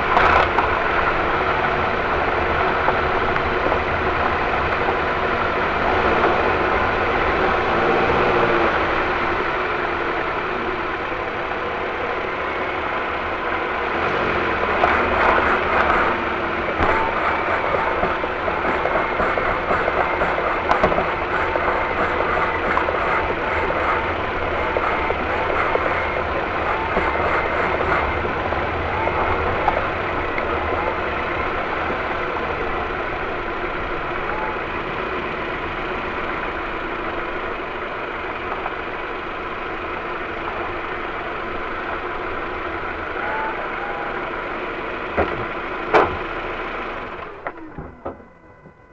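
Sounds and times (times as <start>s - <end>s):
car running noise: 0.0s - 48.9s
suspension knock: 14.7s - 32.4s, 45.1s - 46.4s.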